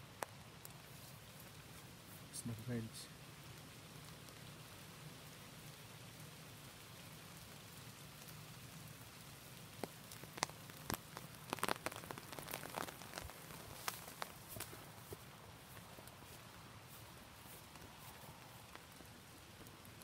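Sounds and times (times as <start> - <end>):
rain hiss: 0.0 - 20.0
sharp taps and drips: 9.8 - 16.4.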